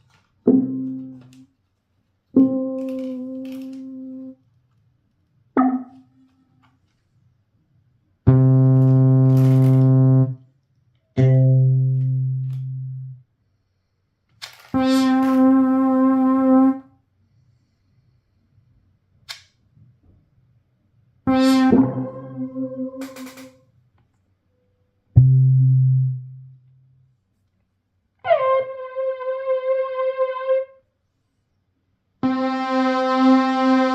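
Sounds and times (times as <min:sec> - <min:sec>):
single synth notes: 0:05.6 - 0:06.2, 0:08.3 - 0:10.4, 0:11.2 - 0:13.2, 0:21.3 - 0:23.5, 0:25.2 - 0:26.8, 0:32.2 - 0:33.9.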